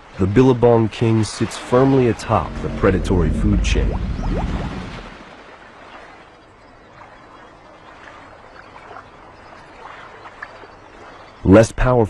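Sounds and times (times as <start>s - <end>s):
water lapping and trickling: 0.0s - 12.0s
water drips and splashes: 3.8s - 11.6s.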